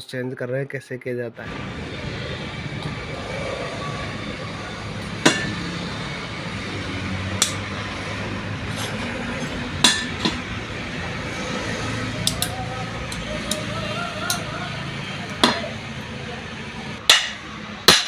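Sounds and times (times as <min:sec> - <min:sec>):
steady low hum: 0:01.4 - 0:18.0.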